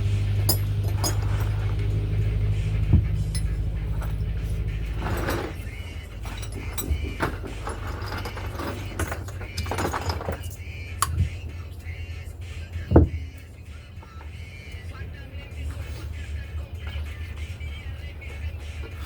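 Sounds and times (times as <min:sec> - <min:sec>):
low mechanical hum: 0:00.0 - 0:19.0
metal tools clinking on engine parts: 0:00.0 - 0:19.0.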